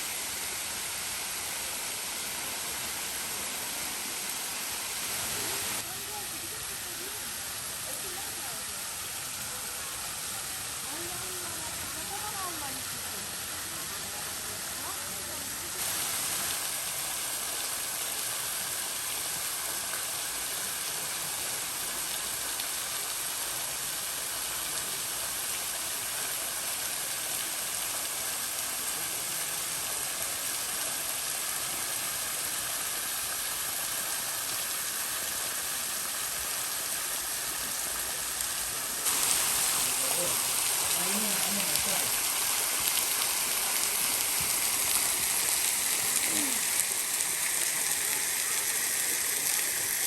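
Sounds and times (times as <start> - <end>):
waterfall roaring: 0.0 - 19.4, 31.8 - 50.0.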